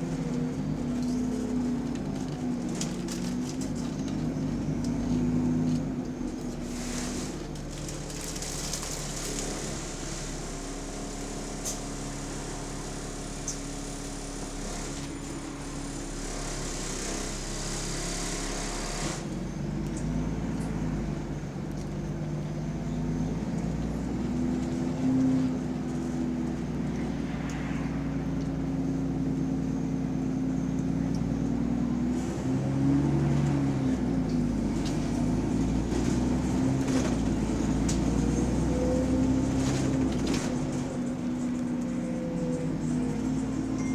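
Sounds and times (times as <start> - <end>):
bus engine running: 0.0 - 43.9.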